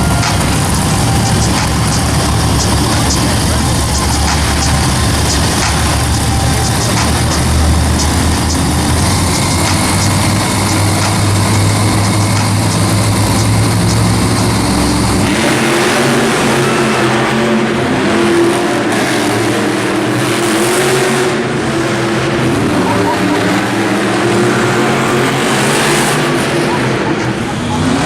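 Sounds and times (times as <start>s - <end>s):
monster truck engines revving: 0.0s - 28.0s.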